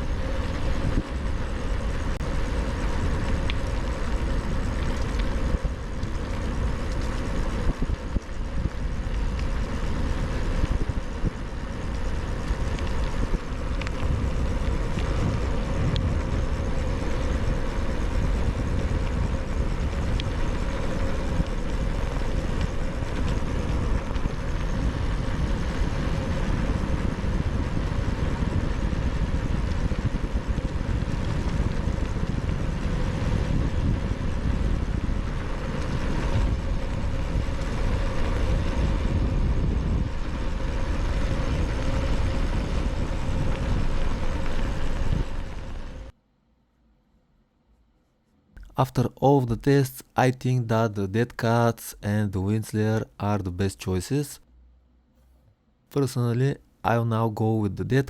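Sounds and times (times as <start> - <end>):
wind and tyre rumble: 0.0 - 46.2.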